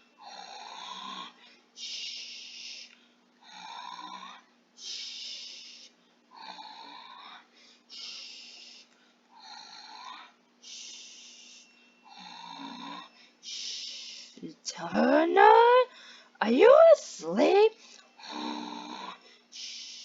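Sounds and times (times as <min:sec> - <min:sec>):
cartoon snoring: 0:00.2 - 0:01.4, 0:03.5 - 0:04.4, 0:06.4 - 0:07.4, 0:09.4 - 0:10.3, 0:12.1 - 0:13.1, 0:18.2 - 0:19.2.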